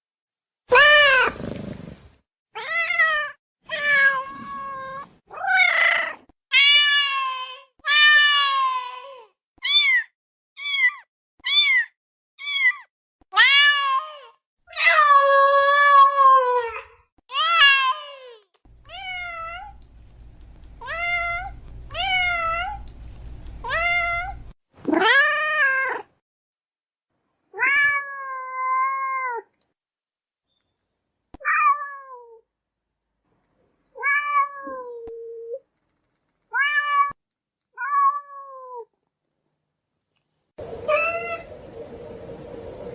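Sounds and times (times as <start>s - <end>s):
cat meowing: 0.7s - 1.9s, 18.8s - 19.8s, 20.8s - 22.9s.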